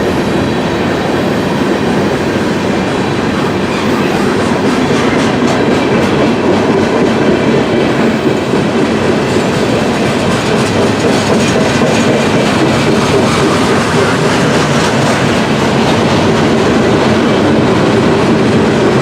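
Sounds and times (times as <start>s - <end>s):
train wheels clacking on rails: 0.0s - 19.0s.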